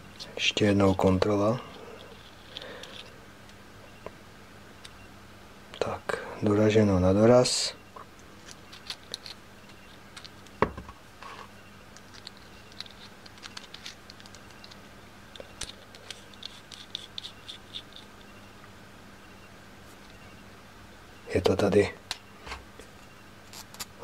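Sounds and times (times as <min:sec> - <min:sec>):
metal parts clicking and scraping: 0:01.7 - 0:03.1, 0:08.4 - 0:10.5, 0:11.9 - 0:18.3, 0:23.5 - 0:24.0.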